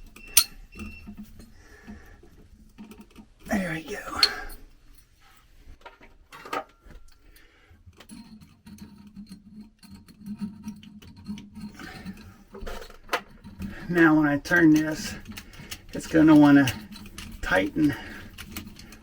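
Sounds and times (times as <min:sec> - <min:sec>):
screwdriver clicks and scrapes: 0:00.2 - 0:00.9.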